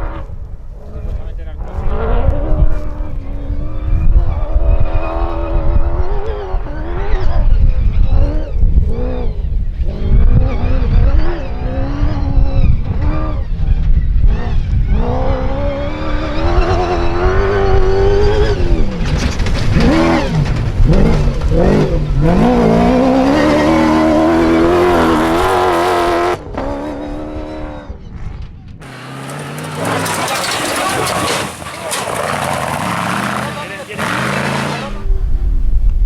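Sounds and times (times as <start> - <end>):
tyres rumbling on rough ground: 0.0 - 36.0
car engine revving hard: 19.6 - 27.8, 28.8 - 35.1.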